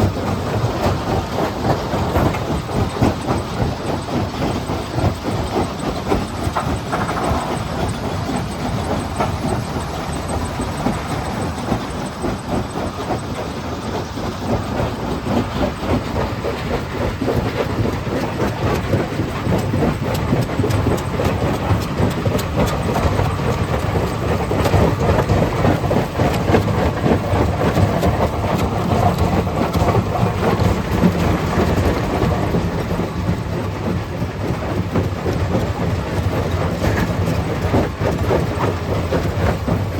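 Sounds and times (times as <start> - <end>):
steady machine rumble: 0.0 - 39.9.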